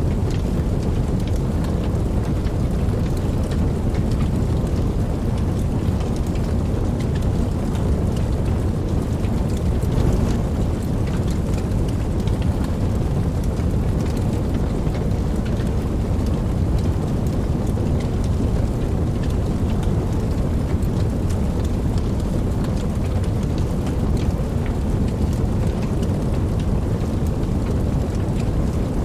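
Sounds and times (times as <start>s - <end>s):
steady rain: 0.0s - 29.0s
distant thunder rumble: 6.1s - 16.1s.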